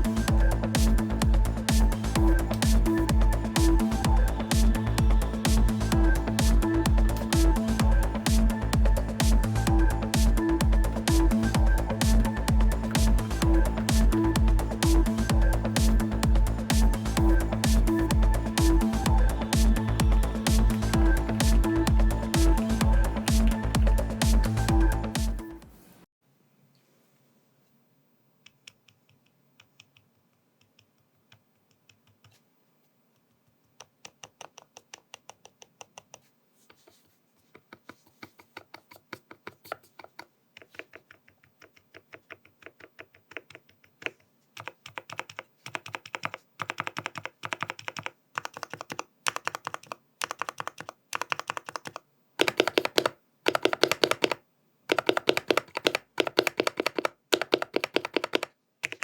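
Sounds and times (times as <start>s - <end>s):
typing on a keyboard: 33.8s - 36.3s, 37.6s - 59.0s.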